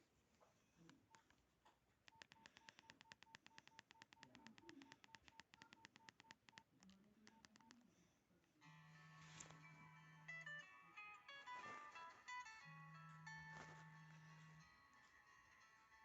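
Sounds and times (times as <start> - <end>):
phone keypad beeps: 2.1 - 7.8.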